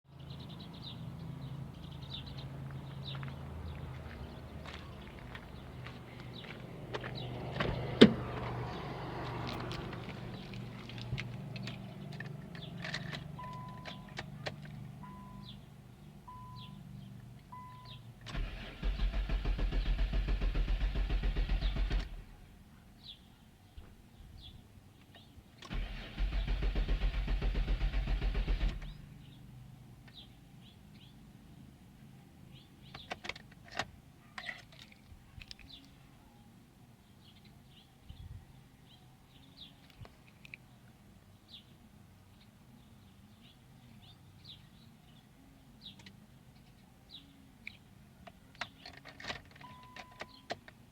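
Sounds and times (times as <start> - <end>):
short beeps: 15.0 - 15.6, 16.3 - 16.8, 17.6 - 18.0.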